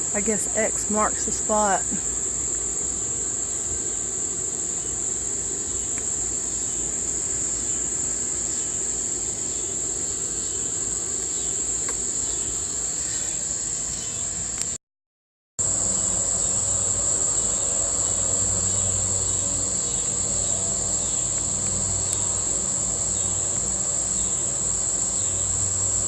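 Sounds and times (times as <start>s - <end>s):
insects chirping: 0.0s - 14.8s, 15.6s - 26.0s
low rumbling noise: 15.6s - 26.0s.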